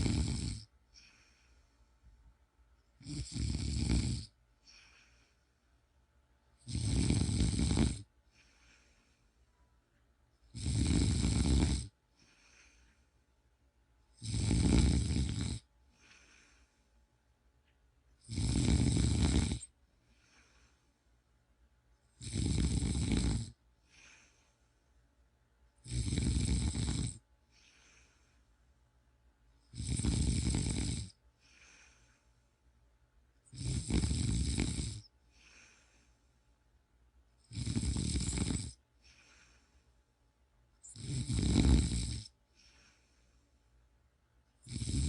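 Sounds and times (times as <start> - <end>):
person snoring: 0.0 - 1.6, 3.0 - 5.4, 6.6 - 9.2, 10.5 - 12.9, 14.2 - 16.7, 18.2 - 20.8, 22.2 - 24.5, 25.8 - 28.4, 29.7 - 32.2, 33.5 - 36.1, 37.5 - 39.7, 40.8 - 43.2, 44.6 - 45.0.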